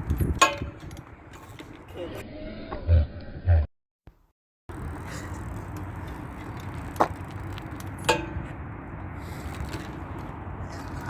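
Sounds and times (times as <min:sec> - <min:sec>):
rushing tyres and wind: 0:00.0 - 0:02.2, 0:04.7 - 0:11.0.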